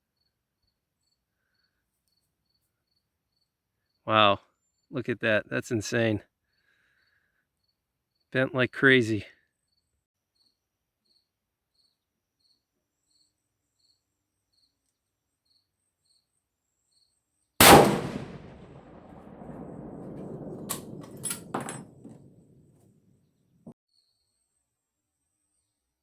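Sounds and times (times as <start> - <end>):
rifle shot with echo: 17.6 - 22.4
sharp clicks: 20.2 - 22.0.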